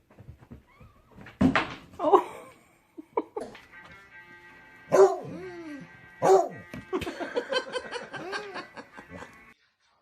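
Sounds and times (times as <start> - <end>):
dog barking: 4.9 - 5.4, 6.2 - 6.7.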